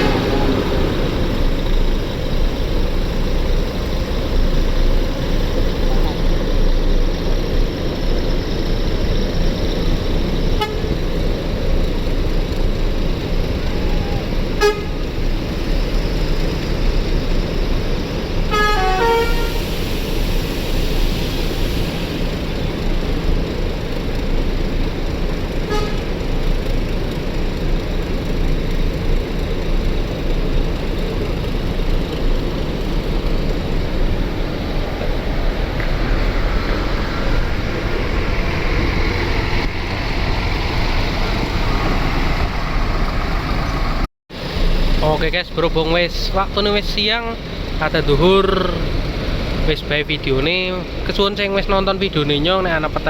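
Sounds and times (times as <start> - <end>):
bus horn playing descending notes: 0.0 - 1.4, 10.6 - 11.0, 14.5 - 15.2, 18.5 - 19.7, 25.6 - 26.2
short horn toots: 0.0 - 1.4, 10.6 - 11.0, 14.0 - 15.1, 18.5 - 19.8, 25.6 - 26.2
road traffic noise: 0.0 - 53.0
hiss: 19.0 - 24.7.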